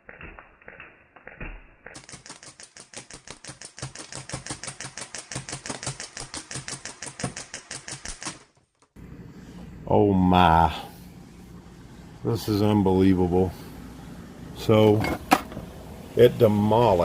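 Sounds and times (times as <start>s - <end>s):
scattered clicks: 0.0s - 8.4s
airsoft rifle full-auto burst: 0.7s - 8.5s.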